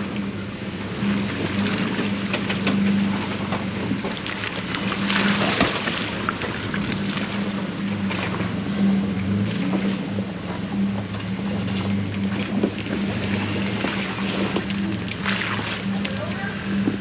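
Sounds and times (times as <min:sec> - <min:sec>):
engine running at low revs: 0:00.0 - 0:17.0.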